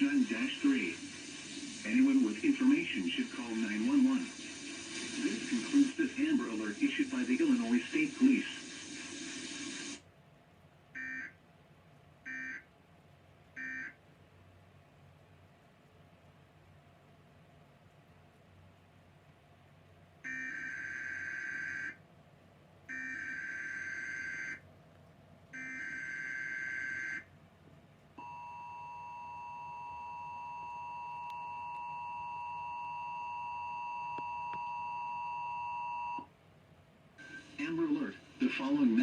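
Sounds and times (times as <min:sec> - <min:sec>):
digital data tone bursts: 0:00.0 - 0:10.0
faint hiss: 0:00.0 - 0:10.0
two-tone attention signal: 0:28.2 - 0:36.2.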